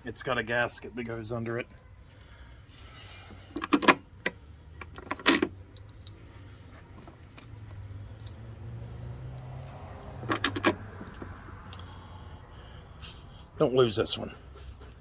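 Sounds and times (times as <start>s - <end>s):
metal tools clinking and rattling: 4.8s - 8.5s.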